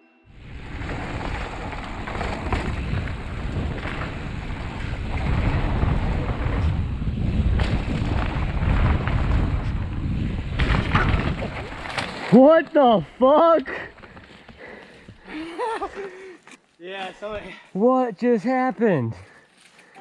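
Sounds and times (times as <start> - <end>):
wind rushing over microphone: 0.3 - 11.8
bike rattling: 0.4 - 15.2.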